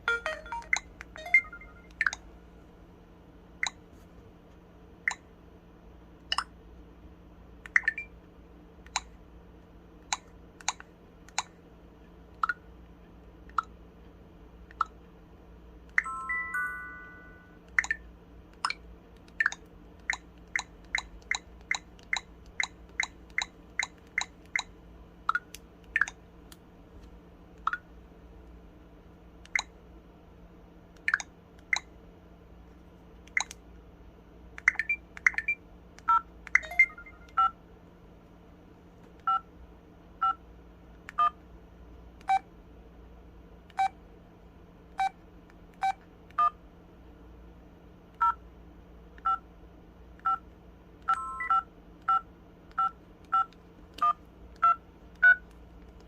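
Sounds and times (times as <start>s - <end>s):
phone keypad beeps: 0.1s - 2.2s, 34.7s - 37.5s, 51.1s - 52.2s, 52.8s - 55.4s.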